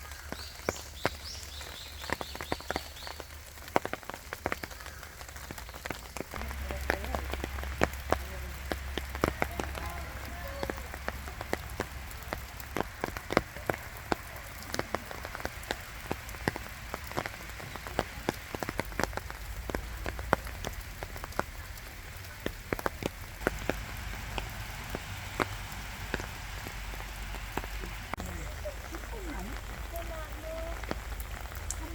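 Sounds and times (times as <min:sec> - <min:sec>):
raindrops tapping: 0:00.0 - 0:31.9
steady rain falling: 0:00.0 - 0:31.9.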